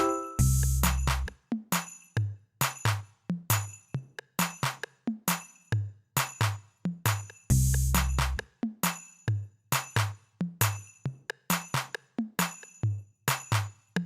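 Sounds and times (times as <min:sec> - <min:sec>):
electronic music with drum-machine beat: 0:00.0 - 0:01.9.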